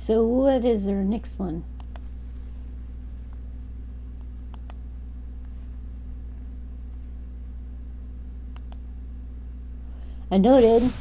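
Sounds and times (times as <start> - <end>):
low electrical hum: 0.0 - 11.0
mouse clicks: 4.5 - 4.8, 8.6 - 8.8.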